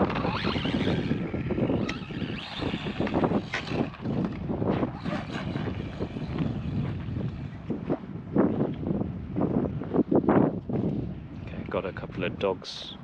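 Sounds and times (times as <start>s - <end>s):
rc truck motor whirring: 0.0s - 7.8s.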